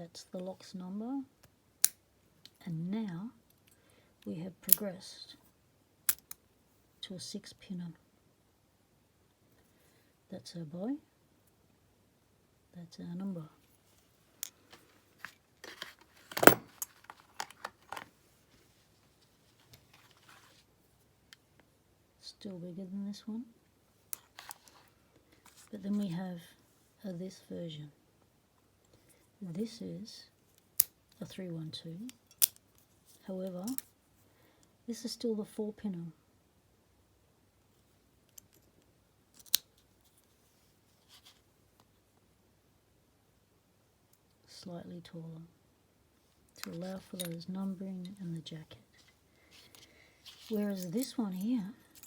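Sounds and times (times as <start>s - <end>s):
soft rustle: 13.2s - 21.1s, 23.9s - 27.3s, 32.6s - 34.3s, 39.7s - 42.2s, 46.1s - 52.0s
padlocks and keys clinking: 16.3s - 18.0s, 46.7s - 47.4s, 49.7s - 52.0s.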